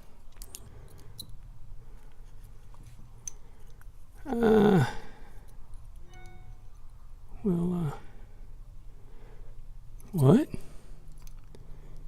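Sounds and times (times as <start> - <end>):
metal lock parts clicking: 0.0 - 2.1.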